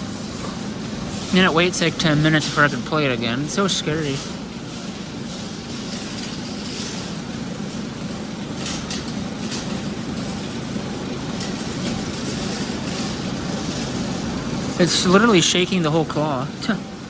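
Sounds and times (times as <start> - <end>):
claw machine motors running: 0.0 - 17.0.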